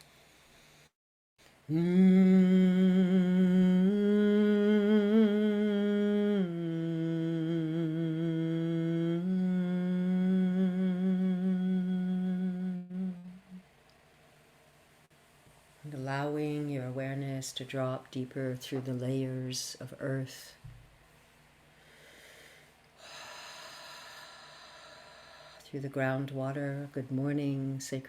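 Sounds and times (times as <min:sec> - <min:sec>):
woman humming a long note: 0:01.7 - 0:13.7.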